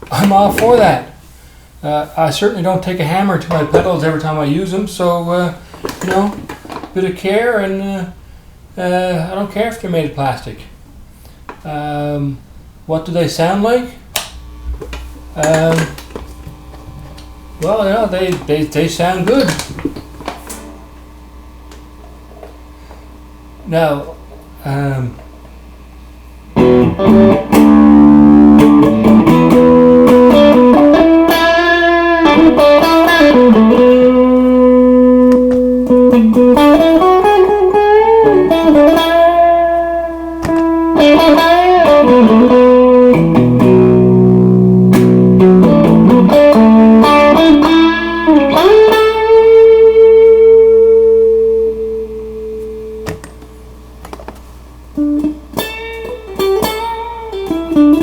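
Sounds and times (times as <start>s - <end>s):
electric guitar lead line: 26.5s - 53.6s, 55.0s - 58.0s.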